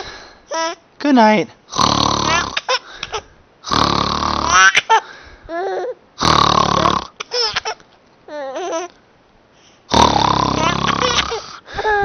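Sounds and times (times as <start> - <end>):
man fake snoring: 1.7 - 2.6, 3.6 - 4.8, 6.2 - 7.2, 9.9 - 11.6.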